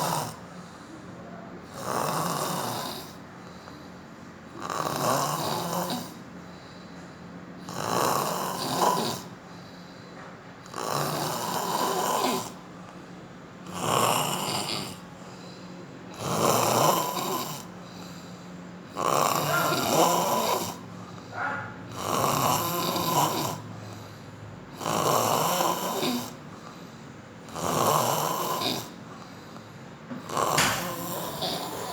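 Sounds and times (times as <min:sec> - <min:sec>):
hippopotamus snoring: 0:00.0 - 0:00.4, 0:01.7 - 0:03.2, 0:04.5 - 0:06.3, 0:07.6 - 0:09.4, 0:10.6 - 0:12.7, 0:13.7 - 0:15.1, 0:16.1 - 0:18.3, 0:18.9 - 0:24.0, 0:24.7 - 0:29.3, 0:30.2 - 0:31.9.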